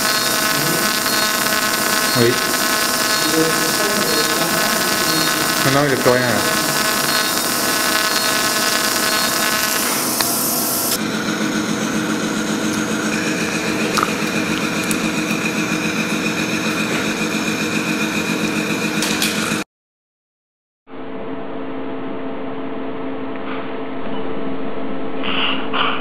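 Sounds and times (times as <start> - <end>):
bright high hiss: 0.0 - 11.0
machine hum with whining tones: 0.0 - 19.6.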